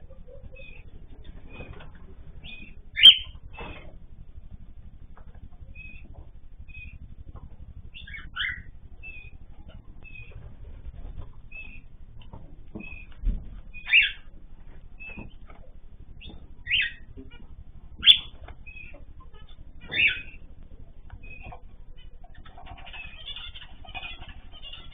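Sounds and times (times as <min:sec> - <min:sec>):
loud bird chirps: 0:00.2 - 0:01.8, 0:02.4 - 0:03.9, 0:05.7 - 0:07.0, 0:07.8 - 0:10.5, 0:11.1 - 0:11.9, 0:12.8 - 0:14.3, 0:16.1 - 0:24.9.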